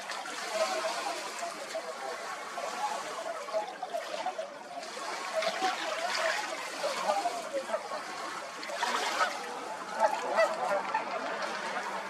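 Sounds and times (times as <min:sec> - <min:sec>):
running water: 0:00.0 - 0:12.0
waterfowl honking: 0:00.0 - 0:12.0.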